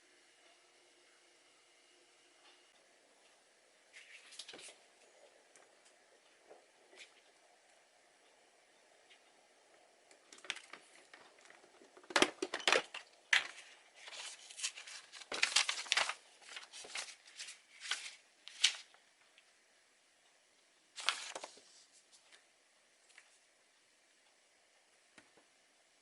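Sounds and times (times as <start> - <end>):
packaging crinkling and tearing: 12.1 - 18.9.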